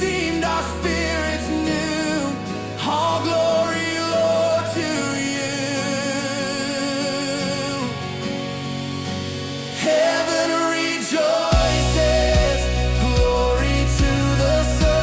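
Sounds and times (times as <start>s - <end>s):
bass: 0.0s - 3.6s, 11.5s - 15.0s
person singing with vibrato: 0.0s - 8.5s, 9.6s - 15.0s.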